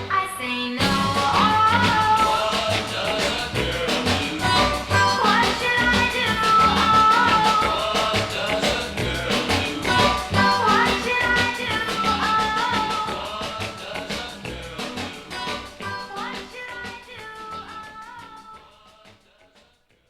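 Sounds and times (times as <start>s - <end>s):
pop song with female vocal: 0.0s - 18.7s.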